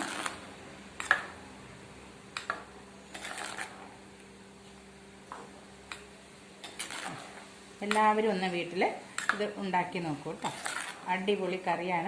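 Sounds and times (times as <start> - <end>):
spoon scraping a pot: 3.1 - 3.8, 6.6 - 7.4, 10.4 - 11.1.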